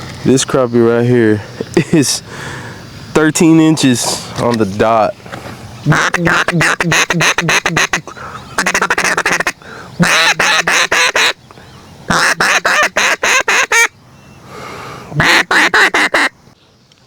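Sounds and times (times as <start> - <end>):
duck call quacks: 5.9 - 11.4, 12.1 - 13.9, 15.2 - 16.3.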